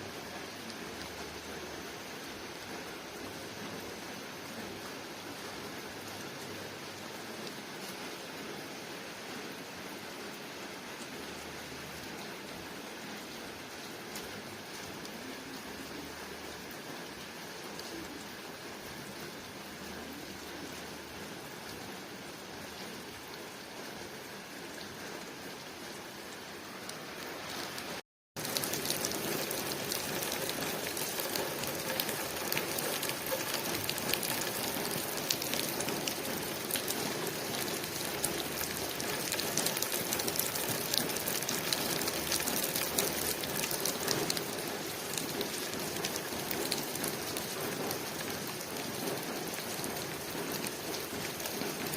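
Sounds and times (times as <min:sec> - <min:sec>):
rain on a window pane: 0:00.0 - 0:51.9
raindrop hits: 0:28.4 - 0:51.9.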